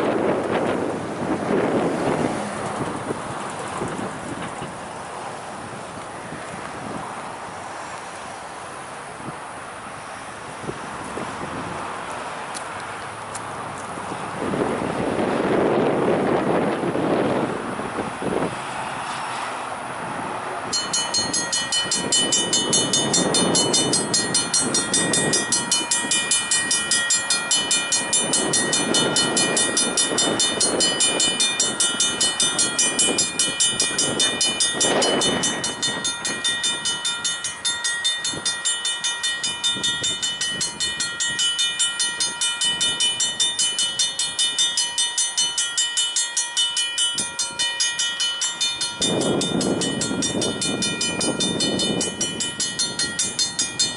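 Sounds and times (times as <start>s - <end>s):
locomotive rumbling past: 0.0s - 53.9s
crossing bell ringing rapidly: 20.7s - 53.9s.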